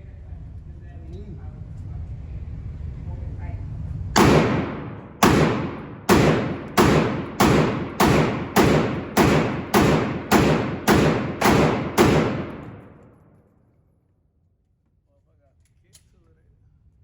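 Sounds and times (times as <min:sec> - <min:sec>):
sharp heavy thuds: 0:04.2 - 0:13.0.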